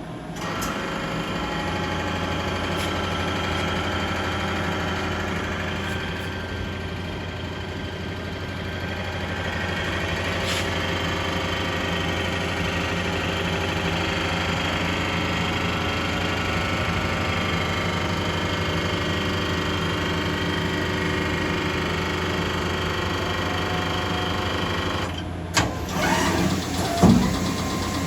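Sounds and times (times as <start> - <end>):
lathe machine hum: 0.0 - 28.0.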